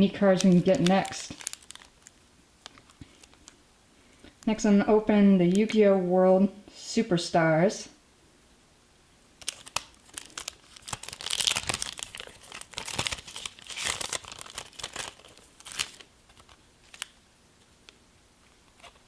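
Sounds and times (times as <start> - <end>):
foil pack tearing and crinkling: 0.2 - 3.6, 9.4 - 17.2.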